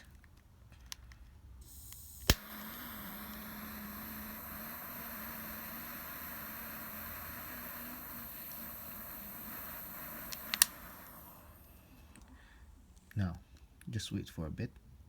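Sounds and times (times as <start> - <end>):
torch flame burning: 1.0 - 13.6
gas torch hissing: 1.6 - 13.8
igniter click: 1.7 - 12.4.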